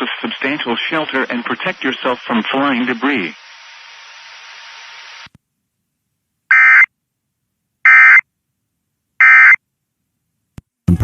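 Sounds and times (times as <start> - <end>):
radio static hiss: 0.0 - 5.3.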